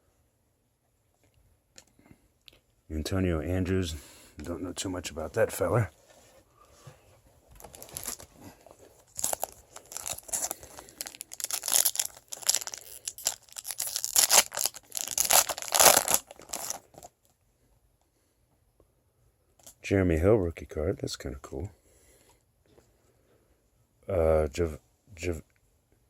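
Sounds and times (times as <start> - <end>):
foil wrapper tearing and crinkling: 9.1 - 17.1.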